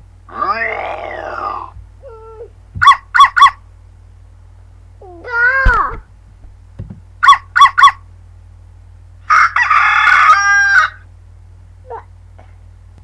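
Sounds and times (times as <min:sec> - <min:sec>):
rooster crowing: 0:09.3 - 0:11.1.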